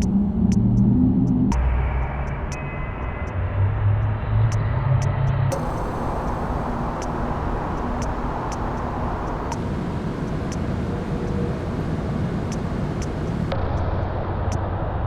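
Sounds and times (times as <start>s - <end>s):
far-off traffic noise: 0.0s - 13.6s
heavy low hum: 5.5s - 13.5s.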